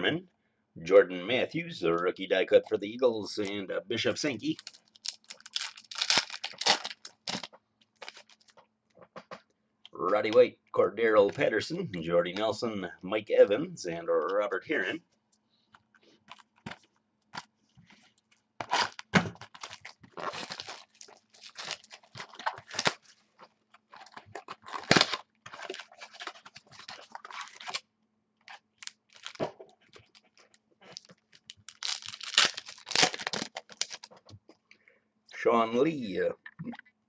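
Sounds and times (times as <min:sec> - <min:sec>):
faint steady hum: 0:00.0 - 0:37.0
wrapper tearing and crinkling: 0:04.4 - 0:08.5, 0:18.6 - 0:23.2, 0:23.8 - 0:27.8, 0:28.5 - 0:29.4, 0:30.0 - 0:34.2.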